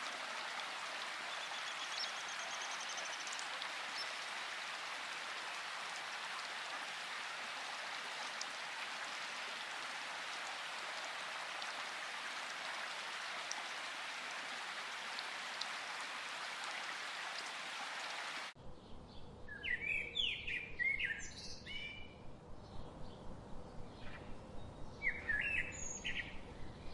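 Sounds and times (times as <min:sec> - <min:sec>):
birds chirping: 0:00.0 - 0:05.1
steady rain: 0:00.0 - 0:18.6.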